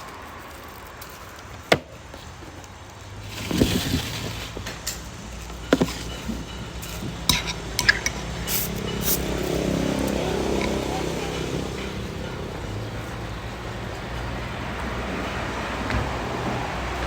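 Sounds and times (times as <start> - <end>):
stirring clatter: 2.4 - 12.2
utensils clinking against bowls: 3.6 - 12.4.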